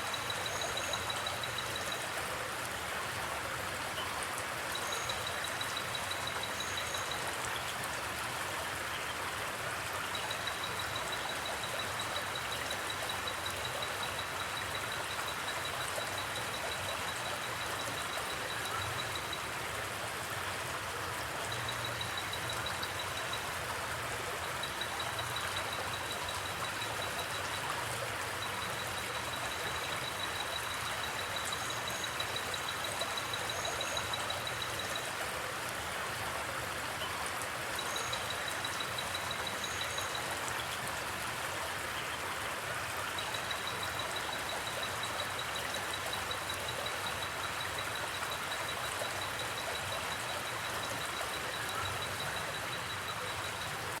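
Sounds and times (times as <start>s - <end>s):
cricket chirping: 0.0s - 2.1s, 24.4s - 35.1s
river water flowing: 0.0s - 54.0s.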